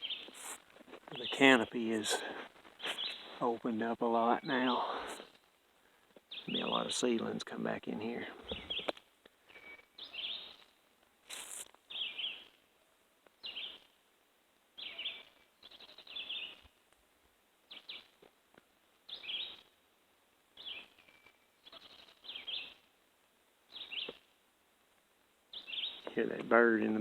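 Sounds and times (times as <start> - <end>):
bird calling: 1.2 - 3.4.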